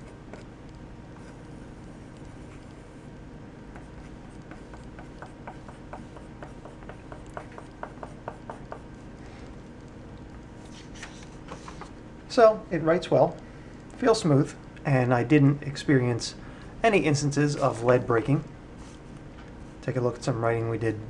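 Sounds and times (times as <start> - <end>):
pencil scratching on paper: 1.2 - 3.1, 3.8 - 9.0.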